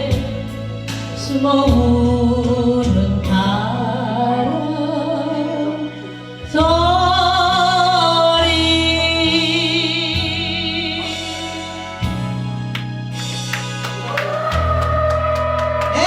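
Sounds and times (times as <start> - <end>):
person singing a slow ballad: 0.0 - 16.0
instrumental accompaniment: 10.1 - 16.0.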